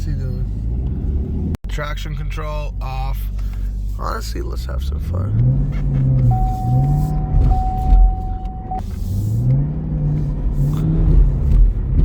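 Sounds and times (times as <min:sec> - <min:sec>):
car engine revving: 0:00.0 - 0:02.3, 0:02.9 - 0:12.0
steady high tone: 0:06.3 - 0:08.8.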